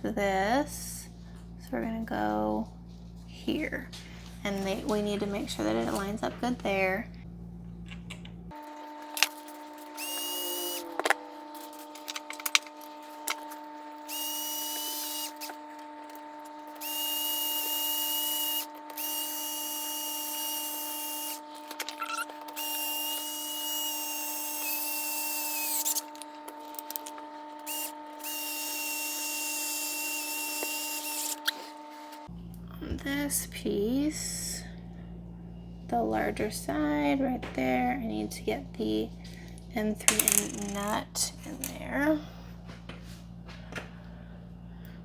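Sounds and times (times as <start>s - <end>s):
steady hum: 0.0s - 45.0s
electric screwdriver running: 8.6s - 31.8s.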